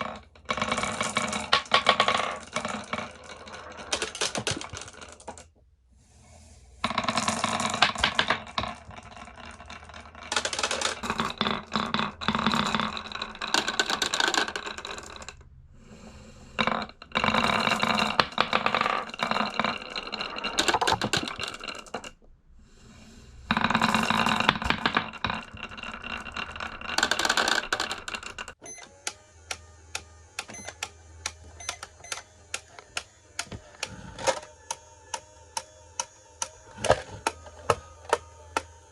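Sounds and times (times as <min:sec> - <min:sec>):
glass marbles rolling and clattering: 0:00.0 - 0:05.5, 0:06.9 - 0:15.4, 0:16.6 - 0:22.2, 0:23.5 - 0:28.6.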